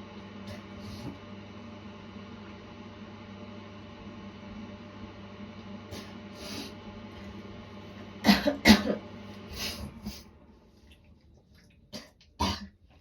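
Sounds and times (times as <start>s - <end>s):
woman coughing: 8.2s - 9.1s, 12.0s - 12.8s.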